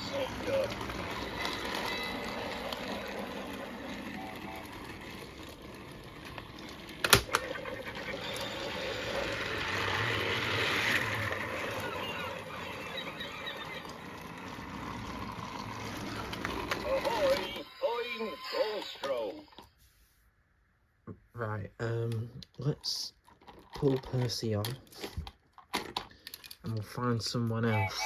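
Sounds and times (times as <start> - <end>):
toy train motor whirring and rattling: 0.0 - 19.7.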